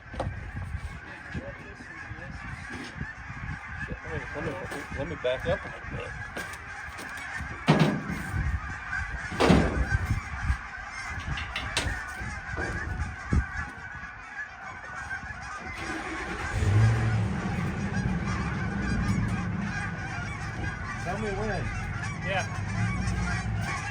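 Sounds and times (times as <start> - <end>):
flock of birds calling: 0.0 - 23.9
loud clunks: 7.6 - 8.4, 9.2 - 10.0
truck engine reversing: 15.7 - 21.1.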